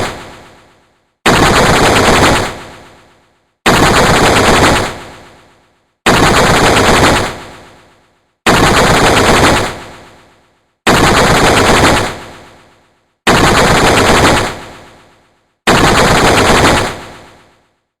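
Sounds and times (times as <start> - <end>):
sci-fi machine-gun bursts: 1.2 - 7.9, 8.5 - 10.2, 10.9 - 12.7, 13.3 - 15.0, 15.7 - 17.6.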